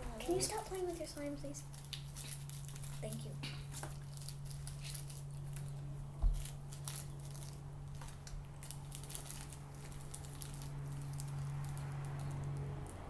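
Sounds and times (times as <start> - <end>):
steady low hum: 0.0 - 13.0.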